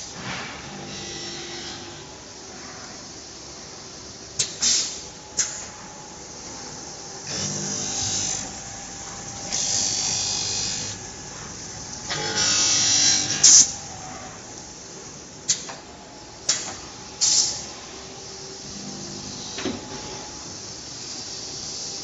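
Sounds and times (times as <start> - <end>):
machine hum: 0.0 - 17.2.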